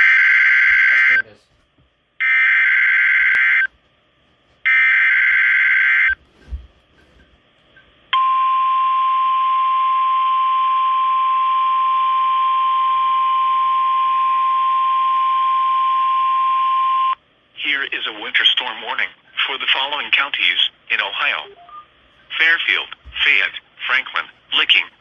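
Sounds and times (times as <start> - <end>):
steady warning alarm tone: 0.0 - 1.3, 2.2 - 3.7, 4.7 - 6.2, 7.7 - 17.2.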